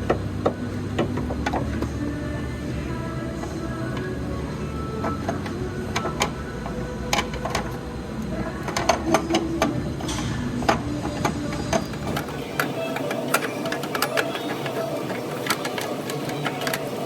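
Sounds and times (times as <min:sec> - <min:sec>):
low background hum: 0:00.0 - 0:17.0
tools clicking on metal parts: 0:05.0 - 0:17.0.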